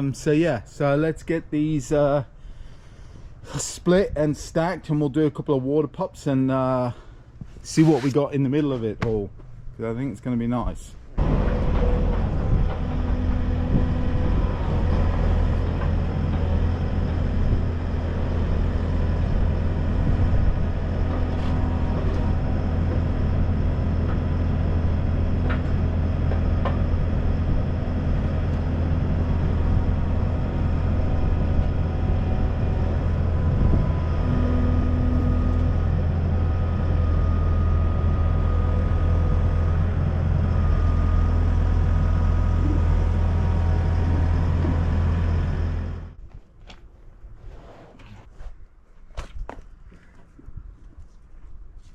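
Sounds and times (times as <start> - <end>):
large engine droning: 11.2 - 46.2.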